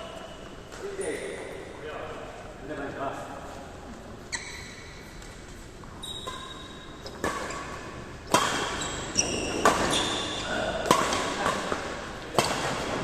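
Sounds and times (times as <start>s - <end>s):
shoe squeaks: 4.2s - 8.0s, 8.6s - 10.7s
racket hitting shuttlecock: 6.2s - 13.0s.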